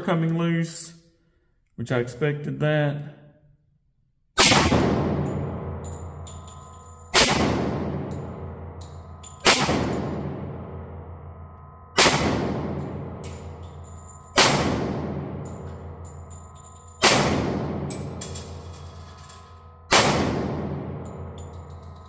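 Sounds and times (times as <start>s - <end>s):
pistol shots echoing: 4.4s - 6.2s, 7.1s - 11.0s, 12.0s - 16.1s, 17.0s - 18.6s, 19.9s - 21.4s.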